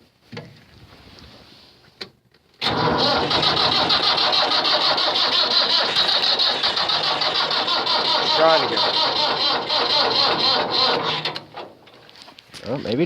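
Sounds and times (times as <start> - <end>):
starter cranking diesel engine: 2.6 - 11.9.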